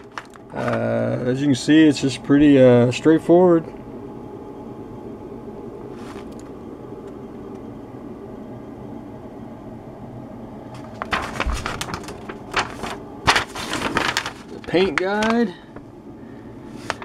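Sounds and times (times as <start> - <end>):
paper crackling and rustling: 0.0 - 0.8, 5.9 - 6.5, 10.7 - 15.9, 16.6 - 17.0
low room hum: 0.0 - 17.0.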